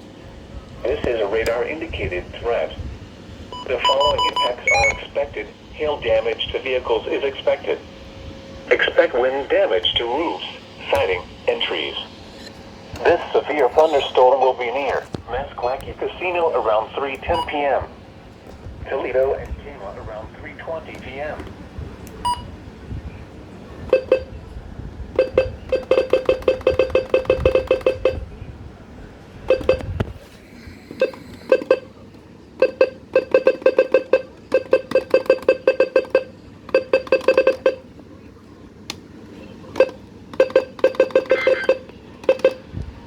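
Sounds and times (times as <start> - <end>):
rapid electronic beeps: 3.6 - 5.1, 23.9 - 24.3, 25.2 - 28.2, 29.5 - 29.8, 32.6 - 37.8, 39.8 - 42.6.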